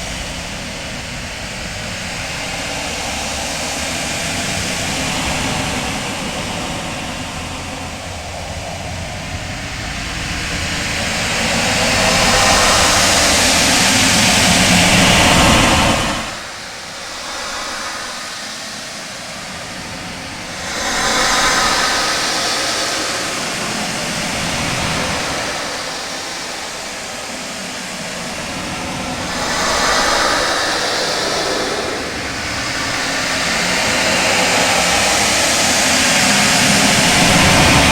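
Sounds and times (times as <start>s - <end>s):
dense rushing space noise: 0.0s - 37.9s
thin hiss: 12.2s - 23.4s.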